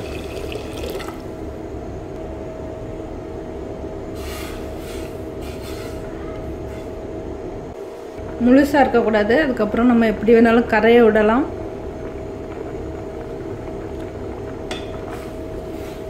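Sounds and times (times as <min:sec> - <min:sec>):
mechanical hum with low rumble: 0:00.0 - 0:16.0
short hissing scrapes: 0:04.2 - 0:06.1.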